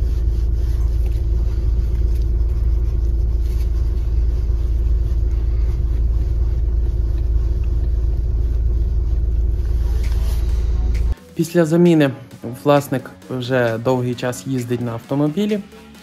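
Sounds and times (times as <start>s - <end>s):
car cabin road rumble: 0.0s - 11.2s.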